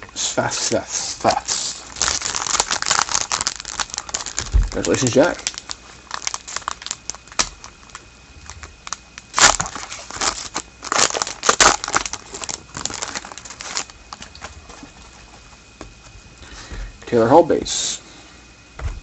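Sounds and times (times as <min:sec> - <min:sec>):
card pack wrapper crinkling: 0:01.3 - 0:15.0.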